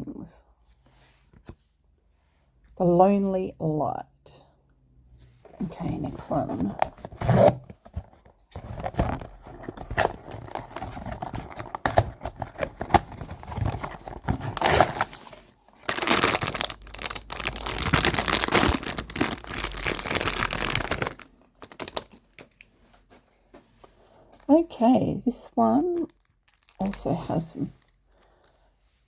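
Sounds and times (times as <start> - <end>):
packaging tearing: 8.6 - 22.6, 26.0 - 27.0
plastic bag crinkling: 8.7 - 22.7, 25.7 - 28.6.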